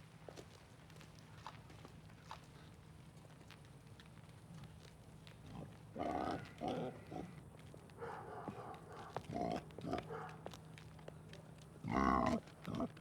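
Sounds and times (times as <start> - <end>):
pig grunting: 6.0 - 7.3, 11.8 - 13.0.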